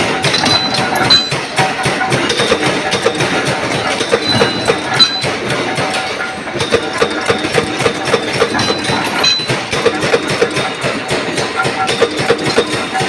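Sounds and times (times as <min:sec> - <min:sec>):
power press clattering: 0:00.0 - 0:13.0.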